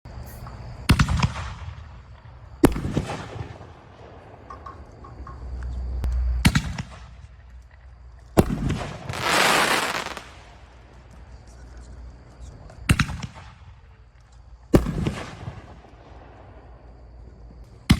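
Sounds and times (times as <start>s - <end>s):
fireworks bangs with echo: 8.4s - 10.6s, 14.8s - 15.8s.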